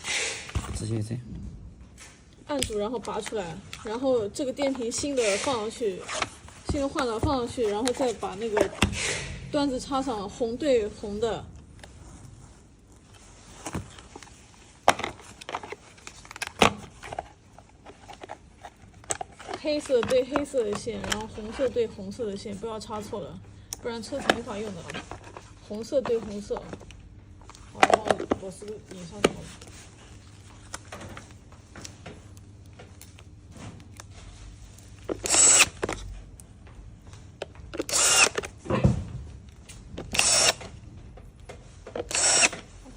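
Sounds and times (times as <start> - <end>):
power screwdriver driving screws: 35.2 - 35.9, 37.8 - 38.5, 40.0 - 40.7, 42.0 - 42.6.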